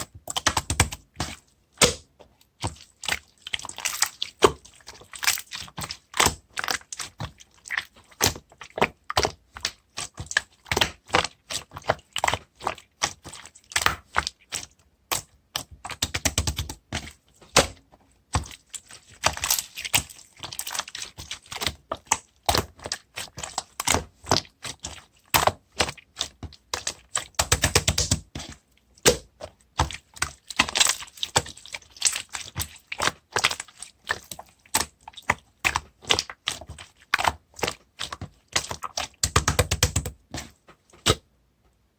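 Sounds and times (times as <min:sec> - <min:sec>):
slime clicking and popping: 0:00.3 - 0:02.1, 0:13.8 - 0:16.8, 0:25.3 - 0:40.2.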